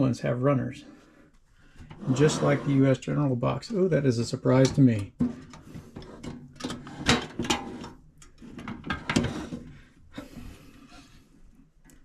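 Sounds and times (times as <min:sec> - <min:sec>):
tool box drawers sliding and clacking: 0:01.9 - 0:02.8, 0:05.2 - 0:09.7.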